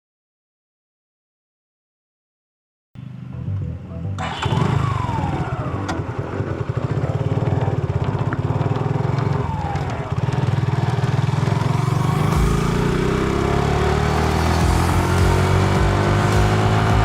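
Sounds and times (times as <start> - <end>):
motorcycle exhaust pulsing: 3.4 - 17.0.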